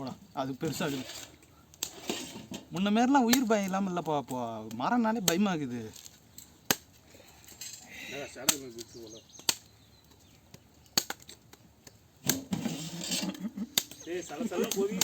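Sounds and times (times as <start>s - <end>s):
low voices talking: 7.6s - 9.2s, 12.8s - 15.0s.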